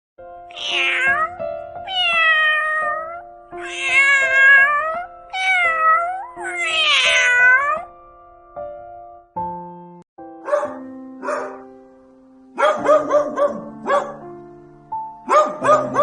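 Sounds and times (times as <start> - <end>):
background music with held notes: 0.2 - 16.0
cat meowing: 0.5 - 7.9.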